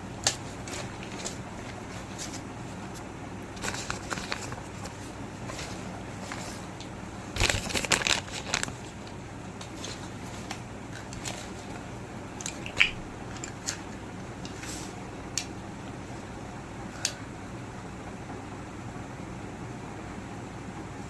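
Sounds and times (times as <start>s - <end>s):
crinkling handling noise: 0.0s - 15.6s
steady low hum: 0.0s - 21.0s.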